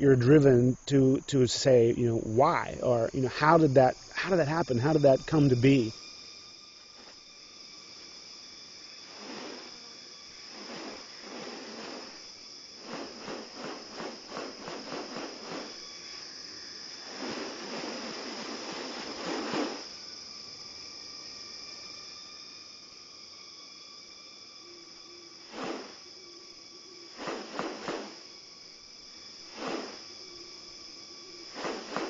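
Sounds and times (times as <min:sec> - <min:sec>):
insects droning: 0:00.0 - 0:32.0
breathy rustling bursts: 0:09.1 - 0:09.8, 0:31.5 - 0:32.0.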